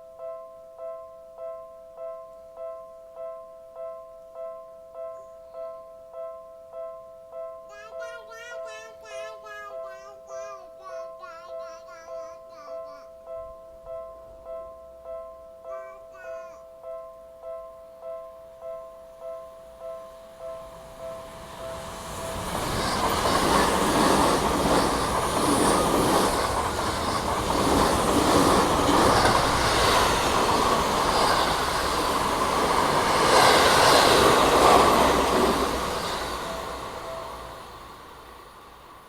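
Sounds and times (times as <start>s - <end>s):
train wheels rumbling on rails: 20.8s - 39.0s
wheels clacking over rail joints: 21.3s - 37.4s.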